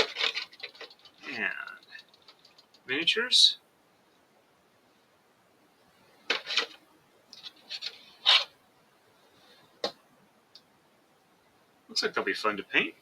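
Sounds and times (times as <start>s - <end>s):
packaging rustling and scraping: 0.0s - 1.3s, 6.3s - 6.8s, 7.4s - 8.6s.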